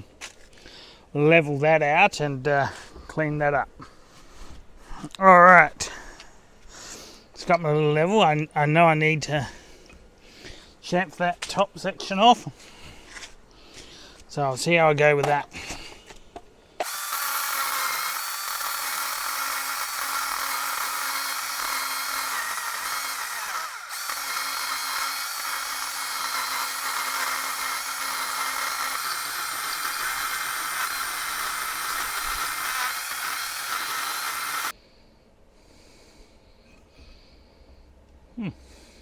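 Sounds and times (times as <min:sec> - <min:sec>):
power tool grinding concrete: 0:16.8 - 0:34.7.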